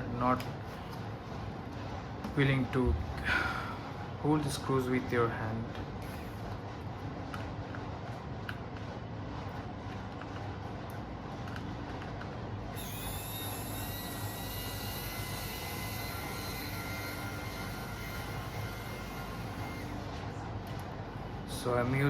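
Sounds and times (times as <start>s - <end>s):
steady low hum: 0.0s - 22.0s
electric screwdriver motor whine: 12.7s - 20.0s.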